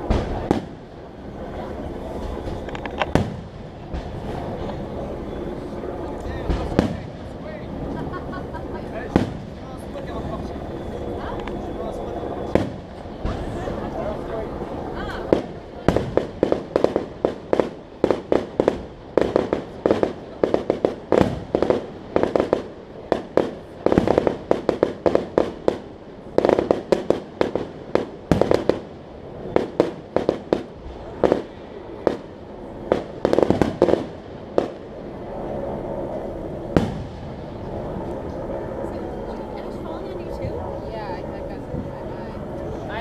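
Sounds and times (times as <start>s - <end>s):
fireworks bangs: 0.0s - 5.0s, 6.2s - 11.6s, 12.4s - 13.8s, 15.0s - 35.0s, 36.6s - 37.7s
steady rushing noise: 0.0s - 43.0s.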